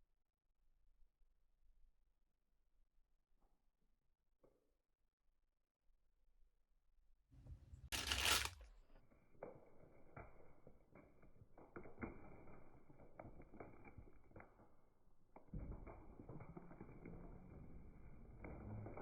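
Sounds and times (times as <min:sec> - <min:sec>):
items clicking and knocking: 0:07.4 - 0:08.6.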